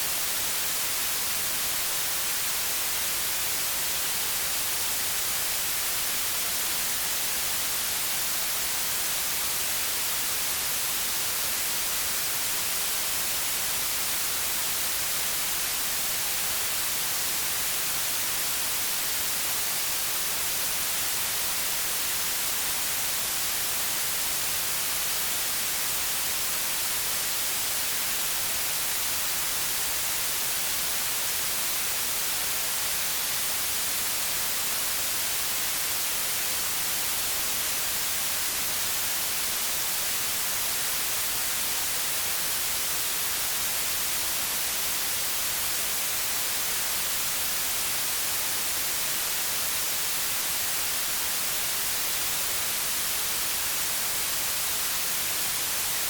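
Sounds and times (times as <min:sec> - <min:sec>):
white noise hiss: 0:00.0 - 0:56.0.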